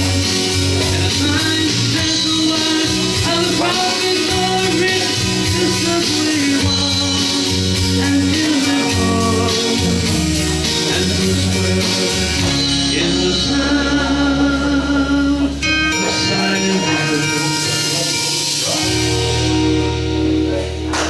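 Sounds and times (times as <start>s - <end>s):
man singing: 0.0s - 19.0s
guitar accompaniment: 0.0s - 21.0s.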